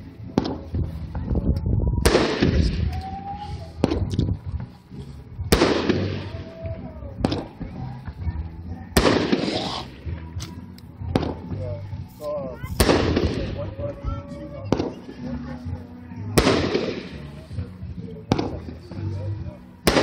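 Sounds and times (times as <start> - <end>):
firework booms: 2.0 - 3.2, 3.8 - 4.6, 5.5 - 6.6, 9.0 - 10.1, 12.7 - 13.7, 16.4 - 17.3
thin firework pops: 3.8 - 4.4.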